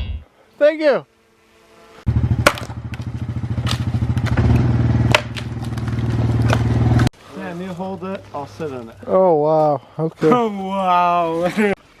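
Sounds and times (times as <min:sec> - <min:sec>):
small engine running: 0:01.6 - 0:07.1.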